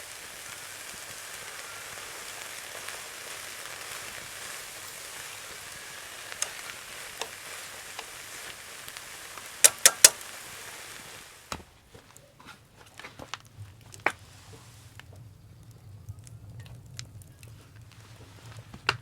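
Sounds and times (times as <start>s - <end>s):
food sizzling in a pan: 0.0s - 11.6s
pops: 6.2s - 8.6s, 9.5s - 10.3s
sharp clicks: 9.6s - 10.2s.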